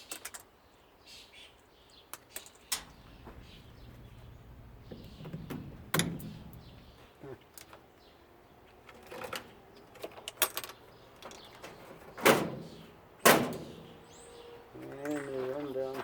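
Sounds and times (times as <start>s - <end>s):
faint bird chirps: 0.9s - 5.5s.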